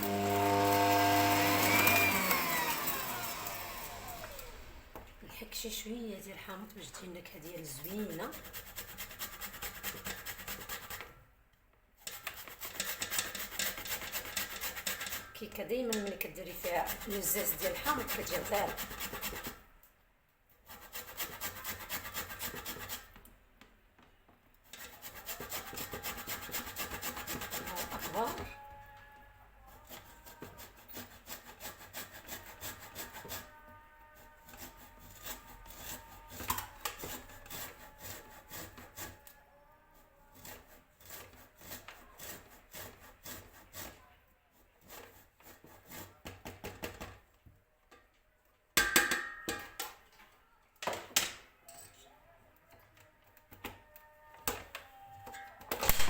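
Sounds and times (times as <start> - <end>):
lemon scraping on grater: 0.2 - 4.6, 7.4 - 11.1, 12.0 - 19.6, 24.7 - 28.6, 29.7 - 33.6, 34.2 - 39.3, 40.3 - 44.0.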